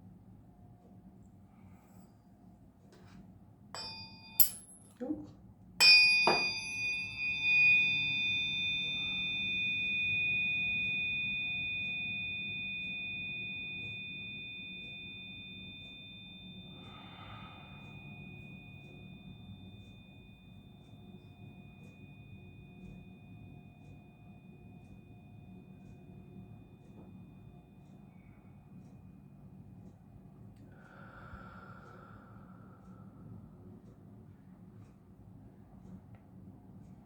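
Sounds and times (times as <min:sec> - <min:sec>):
tuning forks ringing: 0:03.8 - 0:05.1, 0:05.8 - 0:30.2
faint breathy sound: 0:30.7 - 0:33.7.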